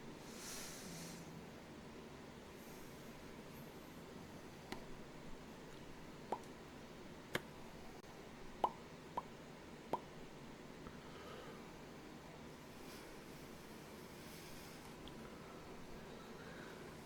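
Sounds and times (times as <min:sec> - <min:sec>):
person making mouth pops: 0:08.6 - 0:09.3, 0:09.9 - 0:10.1.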